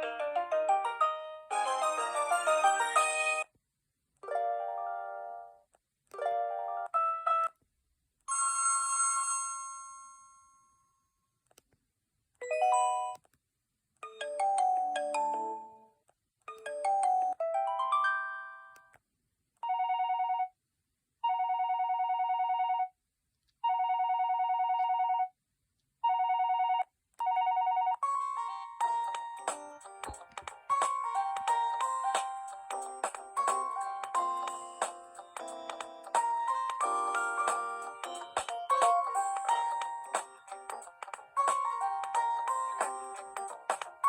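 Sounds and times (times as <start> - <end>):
electronic ringtone melodies: 0.0 - 3.5, 14.0 - 15.9, 26.1 - 44.0.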